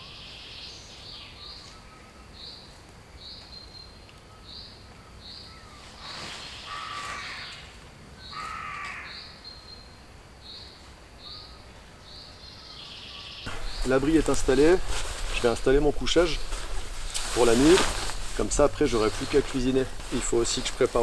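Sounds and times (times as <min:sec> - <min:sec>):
rasping crow-like calls: 0:06.6 - 0:07.7, 0:08.3 - 0:09.3.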